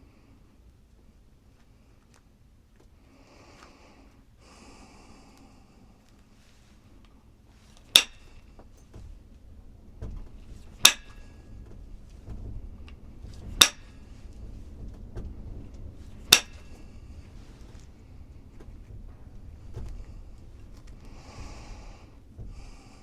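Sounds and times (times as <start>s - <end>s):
hammer striking stone: 7.9s - 8.4s, 10.8s - 11.3s, 13.6s - 14.0s, 16.3s - 16.8s.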